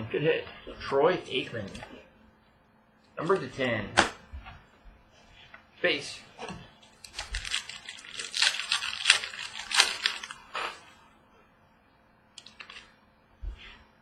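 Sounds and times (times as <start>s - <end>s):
foil wrapper crinkling and tearing: 6.9s - 10.8s, 12.4s - 12.9s.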